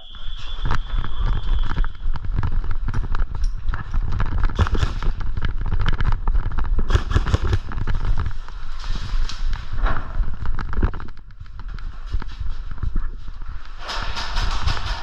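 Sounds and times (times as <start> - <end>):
gear clattering: 0.4 - 15.0.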